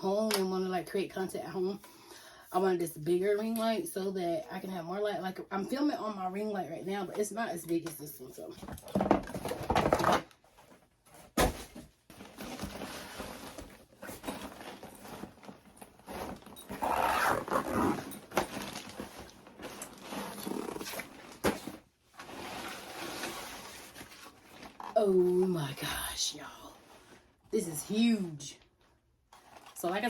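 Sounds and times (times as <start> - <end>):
packaging rustling and scraping: 8.9 - 25.0, 29.3 - 30.0.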